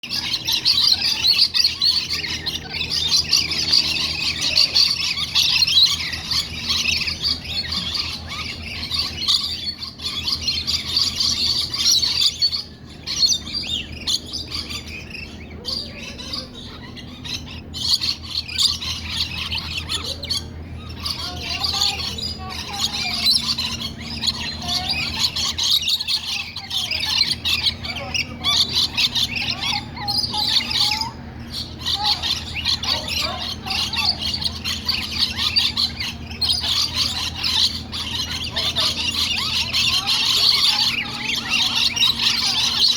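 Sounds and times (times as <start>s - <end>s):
birds chattering and squawking: 0.0s - 42.9s.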